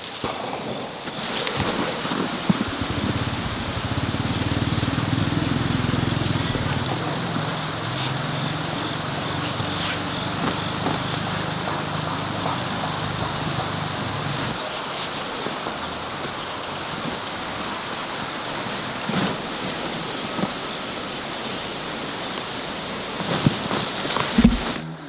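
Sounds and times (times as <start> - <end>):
engine running: 2.5 - 14.6.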